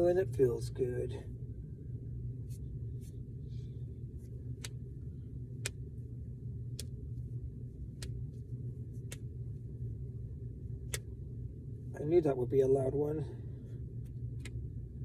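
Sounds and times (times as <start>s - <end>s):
steady low hum: 0.0s - 15.0s
knuckles cracking: 7.9s - 8.3s.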